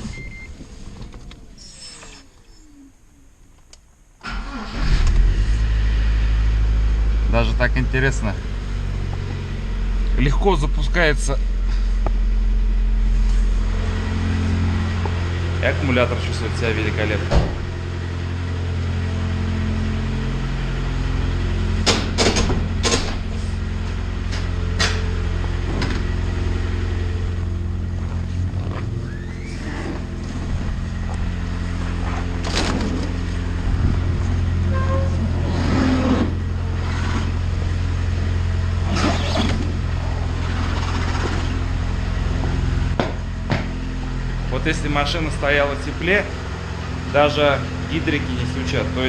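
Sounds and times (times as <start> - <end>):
car engine idling: 4.0 - 49.0
engine clicks and knocks: 21.8 - 23.4, 24.3 - 26.1, 42.9 - 43.8.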